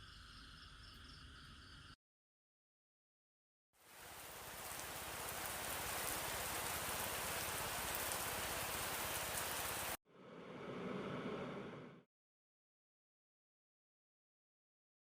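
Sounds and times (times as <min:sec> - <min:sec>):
steady rain: 0:03.8 - 0:10.0.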